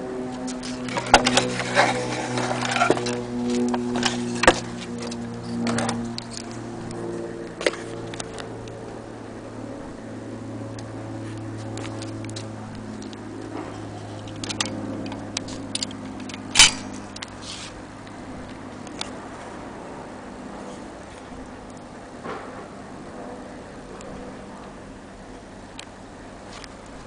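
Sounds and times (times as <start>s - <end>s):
steady low hum: 0.0s - 27.0s
sharp snap: 16.5s - 17.3s.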